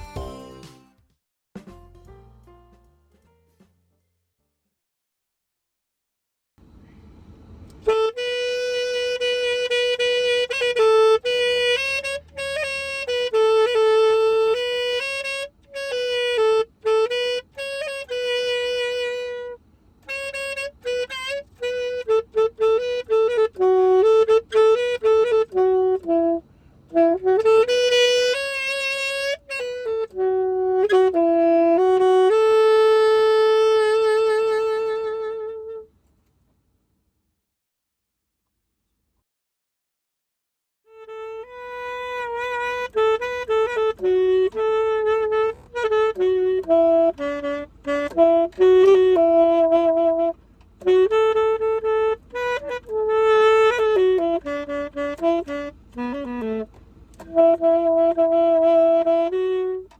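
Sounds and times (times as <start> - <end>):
alto saxophone melody: 0.0 - 0.8, 6.6 - 36.0, 40.9 - 59.9.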